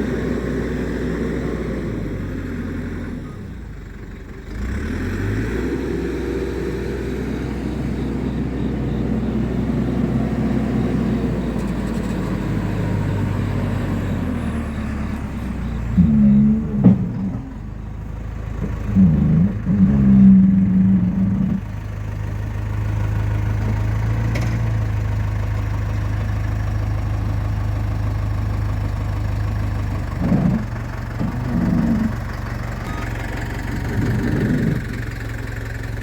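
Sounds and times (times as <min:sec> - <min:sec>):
engine idling: 0:00.0 - 0:36.0
loud wavering sounds: 0:18.8 - 0:21.6, 0:32.9 - 0:35.0.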